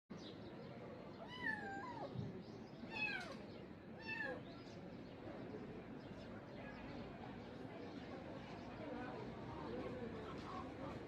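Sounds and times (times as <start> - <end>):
kittens meowing: 1.2 - 2.2, 2.9 - 3.4.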